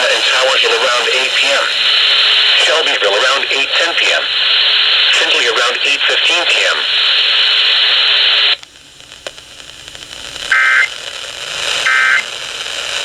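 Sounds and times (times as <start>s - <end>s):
loud radio static: 0.0s - 13.0s.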